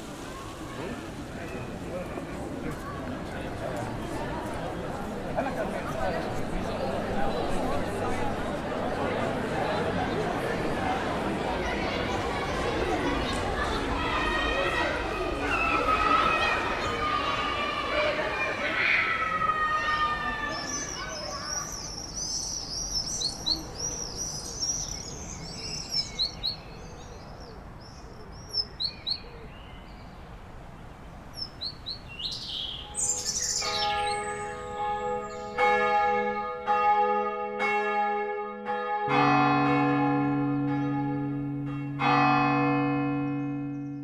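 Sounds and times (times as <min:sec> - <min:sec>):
small birds chirping: 0:20.2 - 0:35.6
church bells ringing: 0:32.8 - 0:44.0.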